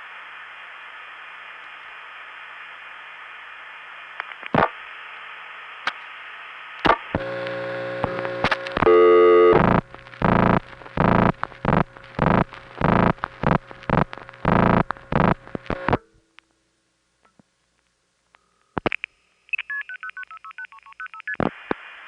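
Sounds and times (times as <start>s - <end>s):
buzzy telephone tone: 7.2s - 16.0s
interrupted harsh tone: 7.2s - 16.0s
line clicks: 7.2s - 16.0s
telephone line hiss: 7.2s - 16.0s.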